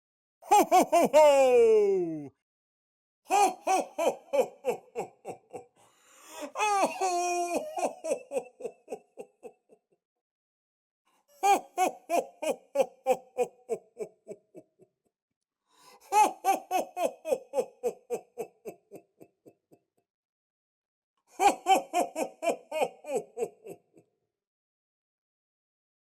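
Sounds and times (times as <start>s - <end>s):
man laughing ho ho ho: 0.4s - 2.3s, 3.3s - 5.8s, 6.6s - 9.8s, 11.4s - 14.9s, 16.1s - 19.8s, 21.4s - 24.1s.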